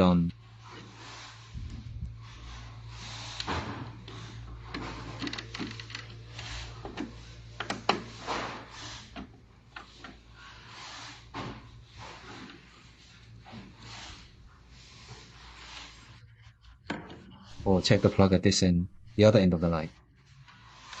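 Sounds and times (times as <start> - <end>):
low electrical hum: 0.0 - 21.0
handling machine parts: 2.2 - 10.5.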